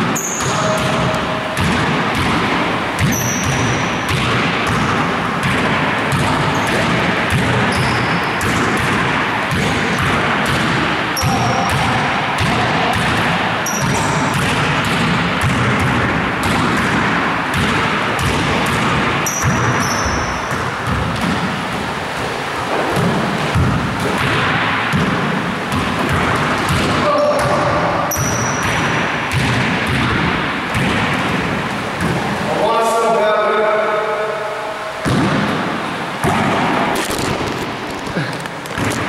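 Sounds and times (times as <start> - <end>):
basketballs bouncing: 0.0 - 32.5, 35.0 - 39.0
high-pitched shoe squeaks: 0.2 - 0.9, 3.0 - 3.6, 6.5 - 6.8, 7.7 - 8.3, 13.6 - 14.2, 19.3 - 20.4, 28.1 - 28.6.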